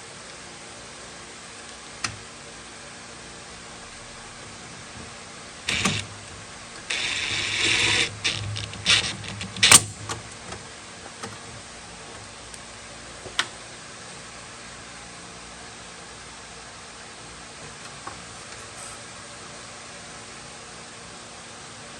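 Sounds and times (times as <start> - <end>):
metal rasping: 6.8 - 10.2
sharp metal clicks: 6.8 - 10.3.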